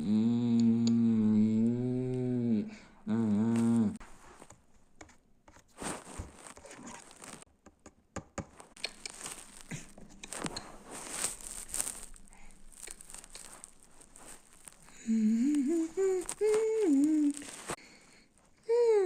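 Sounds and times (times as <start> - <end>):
person humming: 0.0 - 4.0, 14.2 - 17.8, 18.6 - 19.0
clicking: 0.4 - 1.1
faint rustling and crinkling: 3.2 - 7.5, 8.5 - 19.0.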